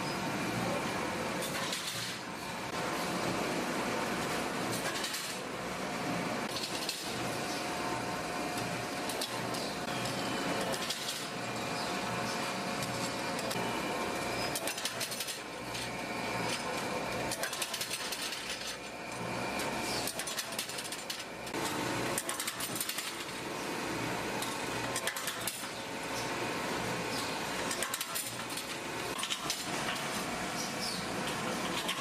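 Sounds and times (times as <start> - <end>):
factory machinery humming: 0.0 - 32.0.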